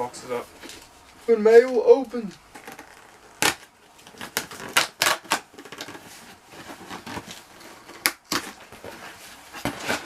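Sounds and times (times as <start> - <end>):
cardboard package torn open: 2.6 - 6.0.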